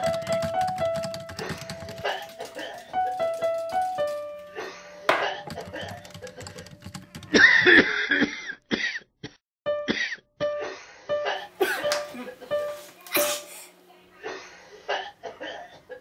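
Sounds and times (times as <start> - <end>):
light background music: 0.0 - 7.5, 9.7 - 13.6
person coughing: 1.9 - 2.9, 4.6 - 6.3, 7.3 - 9.1, 9.9 - 12.4.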